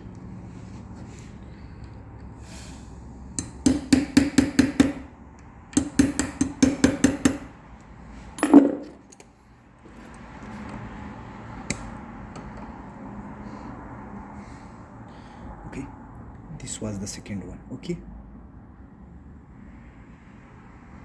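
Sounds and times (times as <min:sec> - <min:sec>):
hammer tapping metal punch: 0:03.4 - 0:05.1, 0:05.7 - 0:07.6, 0:08.4 - 0:09.2
hard hammer strike ringing: 0:08.4 - 0:09.0.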